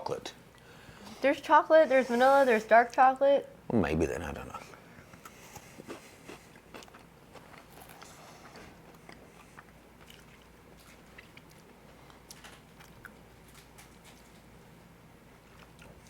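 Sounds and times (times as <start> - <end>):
faint crunching and chewing: 4.6 - 16.0.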